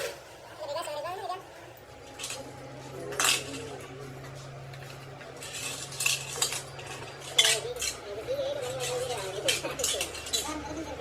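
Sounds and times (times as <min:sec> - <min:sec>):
metal parts clinking and clattering: 0:02.0 - 0:03.9, 0:04.7 - 0:11.0.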